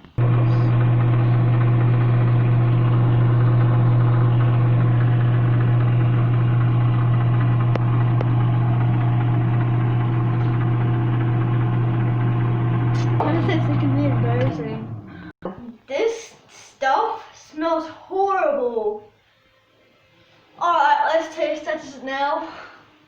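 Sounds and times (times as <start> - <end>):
microwave oven humming: 0.0 - 15.3.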